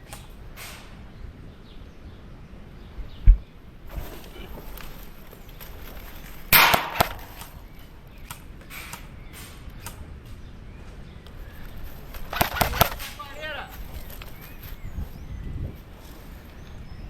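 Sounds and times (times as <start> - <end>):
airsoft guns firing: 6.5 - 9.1, 12.1 - 13.5
sharp click: 12.1 - 13.2.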